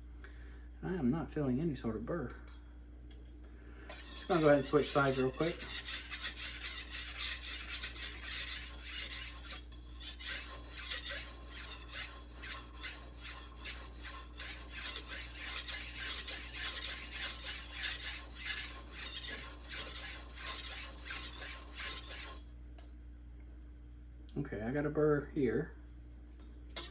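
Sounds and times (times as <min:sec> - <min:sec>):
knife scraping on whetstone: 0:03.9 - 0:22.4.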